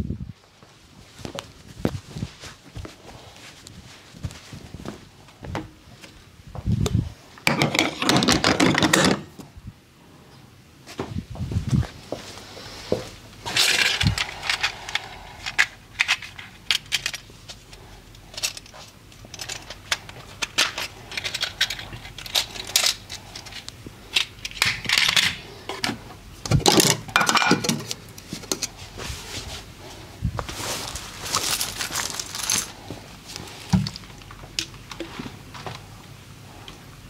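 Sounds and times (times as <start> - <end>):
scraping rustles: 0.6 - 5.4, 27.5 - 34.2.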